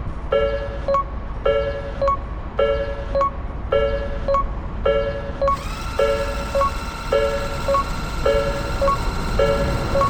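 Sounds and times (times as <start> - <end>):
level crossing warning bell: 0.3 - 10.0.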